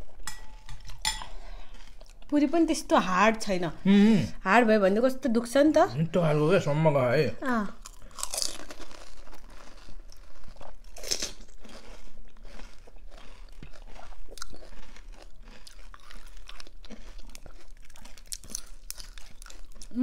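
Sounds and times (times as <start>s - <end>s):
wet chewing: 0.0s - 3.1s, 7.7s - 20.0s
crunching crisp shells: 7.8s - 20.0s.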